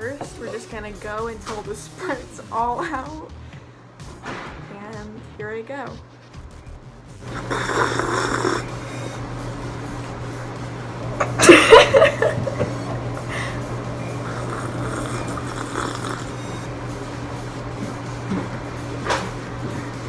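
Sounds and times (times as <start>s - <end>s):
loud rough throaty sound: 7.2s - 9.3s, 13.2s - 16.8s
person slurping and gulping soda: 7.3s - 8.7s, 14.2s - 16.4s.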